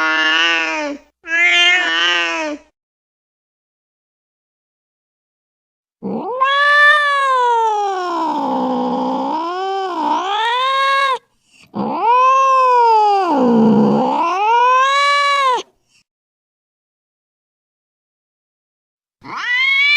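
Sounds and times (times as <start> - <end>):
cat yowling: 0.0 - 2.6, 6.0 - 11.2, 11.8 - 15.7, 19.2 - 19.9.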